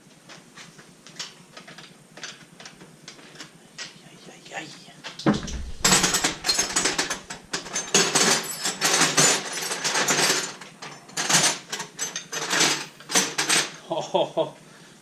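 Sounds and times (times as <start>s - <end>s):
metal tools clattering: 5.3s - 10.6s.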